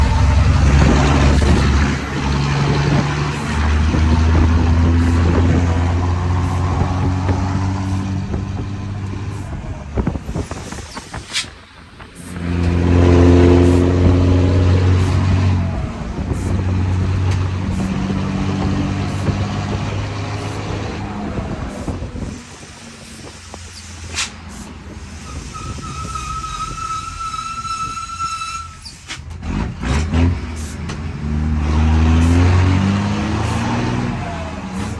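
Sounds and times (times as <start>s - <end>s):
truck diesel engine rumbling: 0.0s - 34.9s
steady high whistle: 25.2s - 28.9s.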